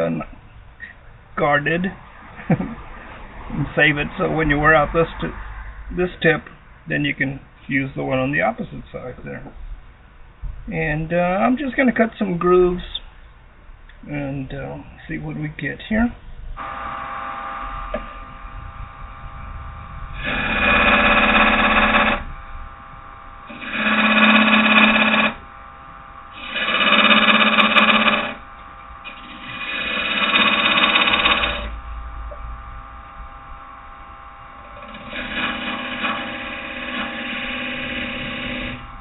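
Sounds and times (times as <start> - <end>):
wood lathe running: 16.6 - 19.4, 20.1 - 31.8, 32.8 - 39.0
lathe tool cutting grooves: 20.2 - 31.8, 34.0 - 39.0.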